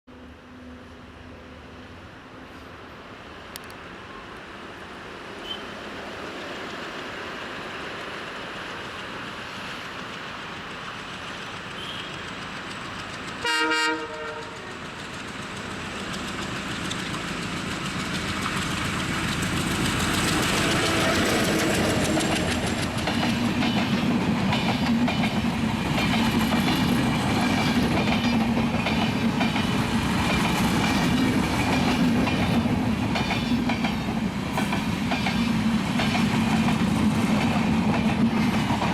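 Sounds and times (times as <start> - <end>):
train rumble: 0.1 - 38.9
diesel locomotive horn blast: 5.4 - 5.7, 11.8 - 12.3, 13.4 - 14.8, 20.5 - 22.3
wheels clattering over rail joints: 14.3 - 38.9.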